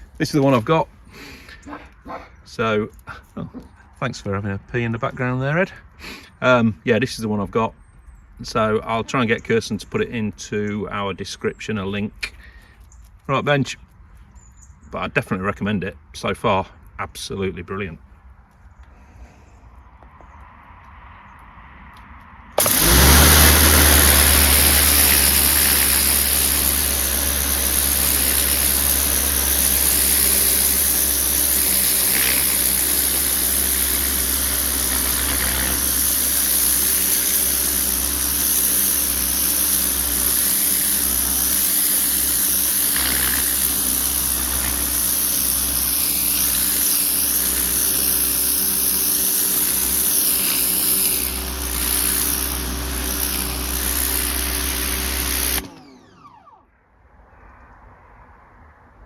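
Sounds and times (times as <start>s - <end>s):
garden machine motor running: 22.6s - 56.6s.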